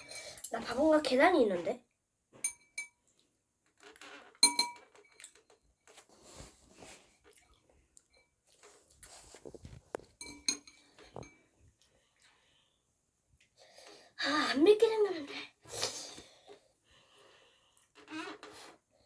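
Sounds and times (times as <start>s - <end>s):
scraping and handling noises: 3.7s - 7.4s, 8.5s - 11.5s
cutlery clinking against a dish: 4.4s - 5.4s, 10.2s - 11.4s.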